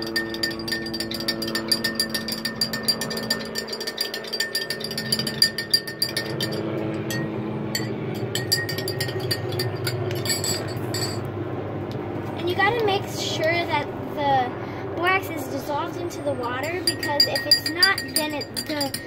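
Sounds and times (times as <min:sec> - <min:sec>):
utensil clinking in container: 0:00.0 - 0:11.3, 0:16.8 - 0:19.0.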